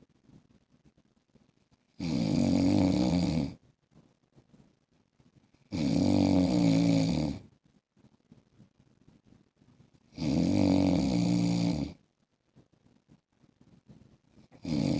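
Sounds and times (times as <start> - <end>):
man snoring: 2.0 - 3.6, 5.7 - 7.4, 10.1 - 12.0, 14.6 - 14.9.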